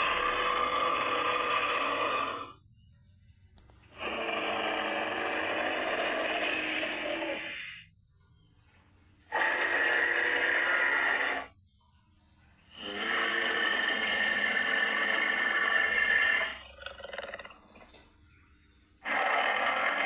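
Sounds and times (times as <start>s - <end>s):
creature calls: 0.0s - 2.6s, 3.9s - 7.9s, 9.3s - 11.6s, 12.7s - 17.9s, 19.0s - 20.0s.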